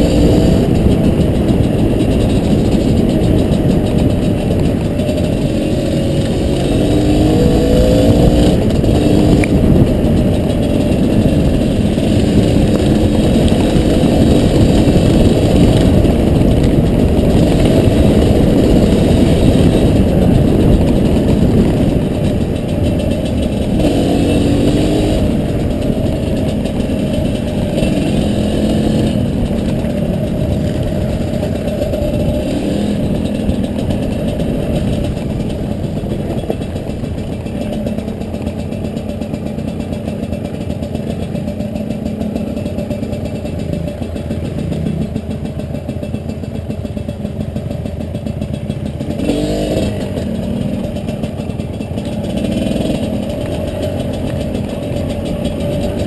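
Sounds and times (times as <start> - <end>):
dirt bike engine revving: 0.0 - 39.0, 48.4 - 56.0.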